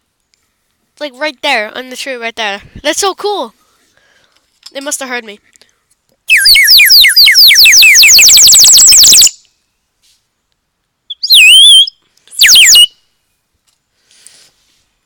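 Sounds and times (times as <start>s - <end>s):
bird-call whistle trilling: 6.3s - 9.6s, 11.1s - 13.1s.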